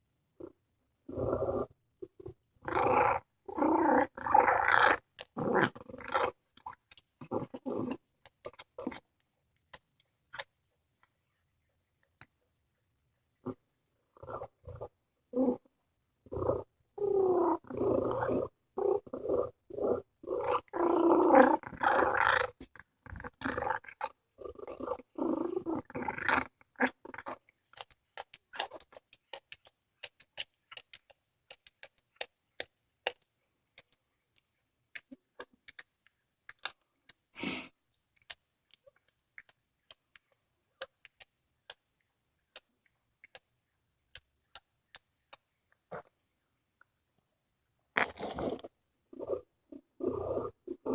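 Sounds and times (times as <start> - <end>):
cat rumbling vocal sounds: 1.1 - 9.0, 16.3 - 29.5, 48.0 - 50.9
cat mouth noises: 4.0 - 9.0, 16.3 - 34.0, 34.9 - 46.1
chewing clicks and crunches: 27.1 - 37.2, 38.1 - 45.5.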